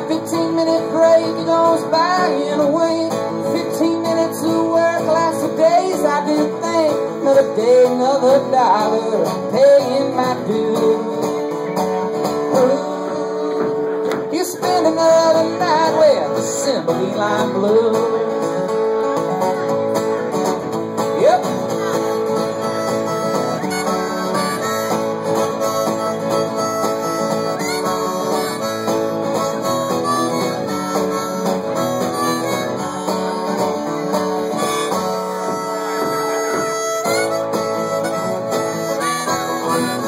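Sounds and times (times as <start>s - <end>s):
strummed acoustic guitar: 0.0s - 40.0s
harmonica playing lead: 21.6s - 40.0s.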